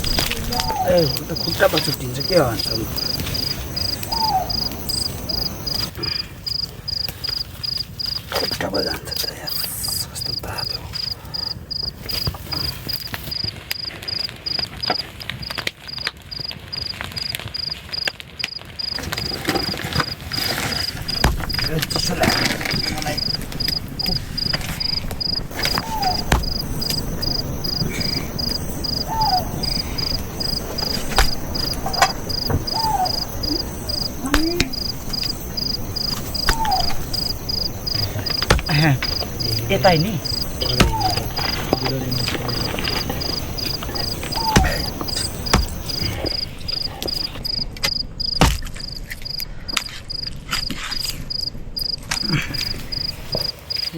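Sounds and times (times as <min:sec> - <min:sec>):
insect chirping: 0:00.0 - 0:53.9
knocks: 0:21.1 - 0:23.4, 0:25.5 - 0:27.0, 0:38.3 - 0:39.3, 0:40.6 - 0:41.9, 0:43.6 - 0:46.2.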